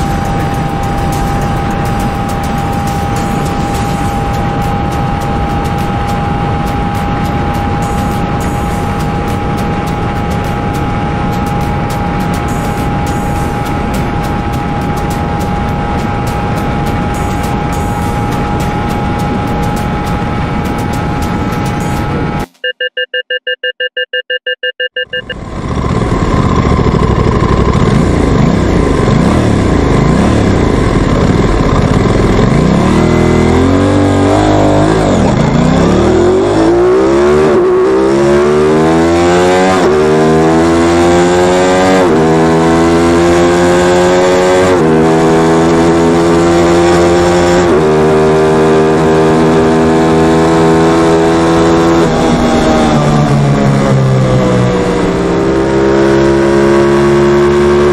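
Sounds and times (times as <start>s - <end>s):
motorcycle accelerating with upshifts: 24.9s - 57.9s.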